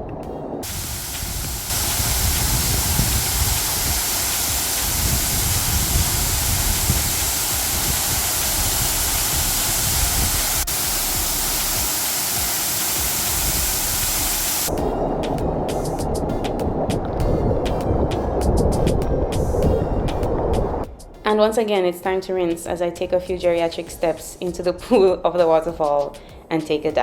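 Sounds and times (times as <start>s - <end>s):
waterfall rushing: 0.6s - 14.8s.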